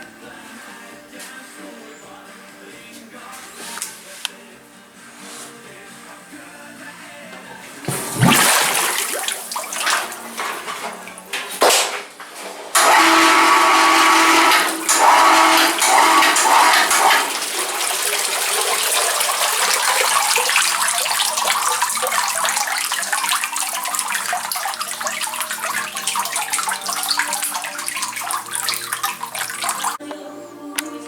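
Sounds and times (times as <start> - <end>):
water spraying hard: 7.9 - 11.2, 12.8 - 30.0
machine whine: 12.8 - 17.5.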